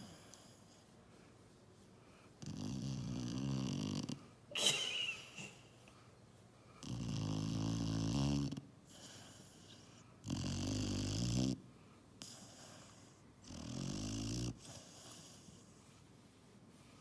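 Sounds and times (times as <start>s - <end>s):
puppy snoring: 2.4s - 4.3s, 6.8s - 15.8s.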